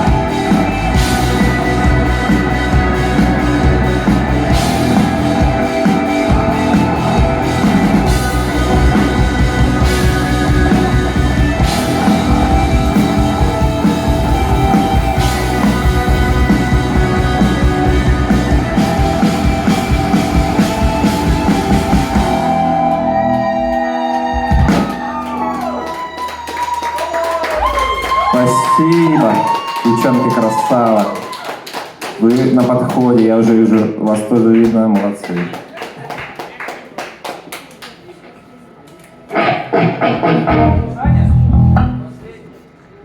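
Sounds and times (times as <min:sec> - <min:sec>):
rock band instrumental: 0:00.0 - 0:26.1, 0:39.3 - 0:42.1.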